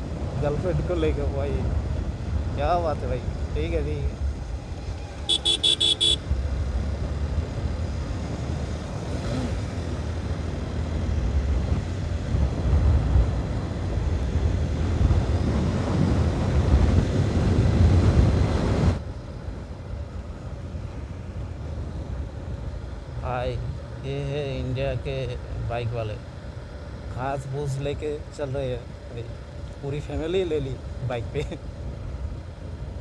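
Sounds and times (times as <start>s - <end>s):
wind and road noise on motorcycle: 0.0s - 33.0s
vehicle horn beeping: 5.2s - 6.2s.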